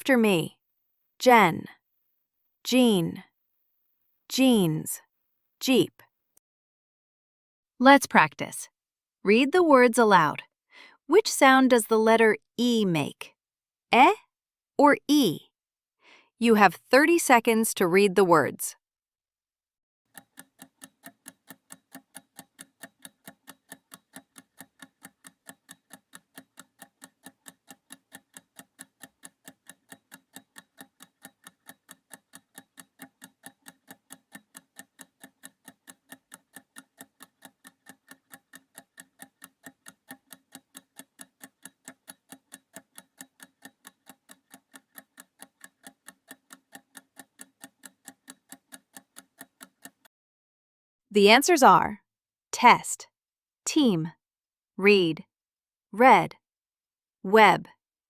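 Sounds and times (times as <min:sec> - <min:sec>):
clock ticking: 0:20.1 - 0:50.1.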